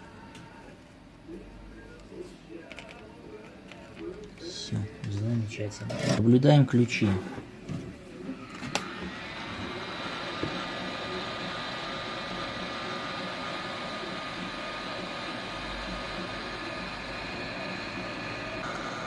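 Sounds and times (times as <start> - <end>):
hot air blower hissing: 6.9 - 19.0.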